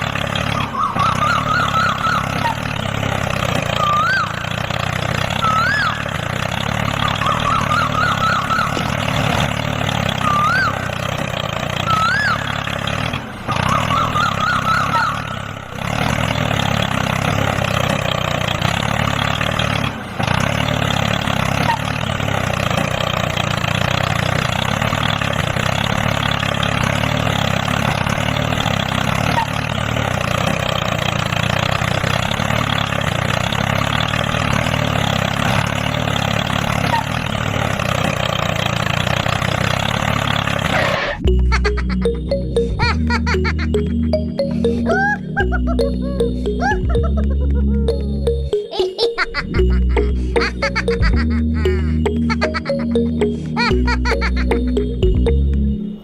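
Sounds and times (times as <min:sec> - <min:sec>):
warbling whistle-like tones: 0:00.0 - 0:12.8, 0:13.5 - 0:15.7
small engine running: 0:00.0 - 0:56.0.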